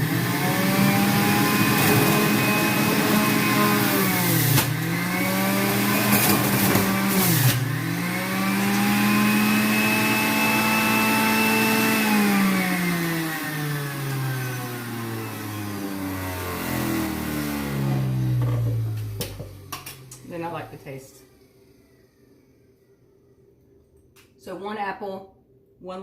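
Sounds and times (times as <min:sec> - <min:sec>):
electric juicer motor whine: 0:00.0 - 0:20.2, 0:21.2 - 0:23.7
juicer grinding crunch: 0:00.0 - 0:20.3.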